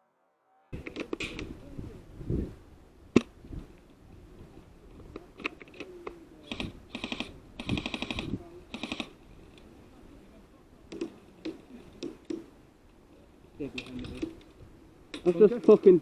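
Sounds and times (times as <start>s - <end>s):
airsoft gun automatic bursts: 6.5s - 9.2s.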